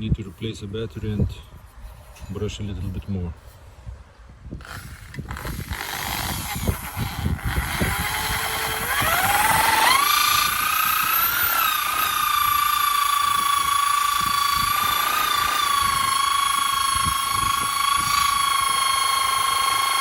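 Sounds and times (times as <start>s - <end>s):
battery drill whining: 4.6s - 20.0s.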